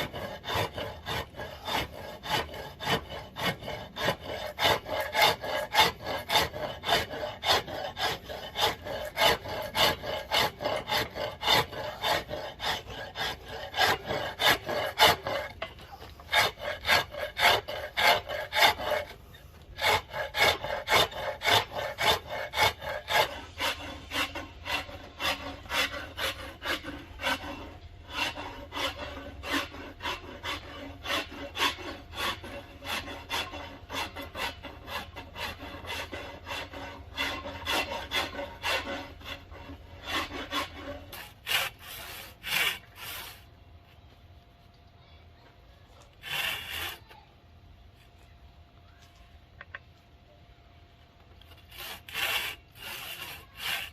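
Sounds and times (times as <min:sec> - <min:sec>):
hand file scraping wood: 0:00.0 - 0:43.5, 0:46.0 - 0:47.2, 0:51.4 - 0:53.9.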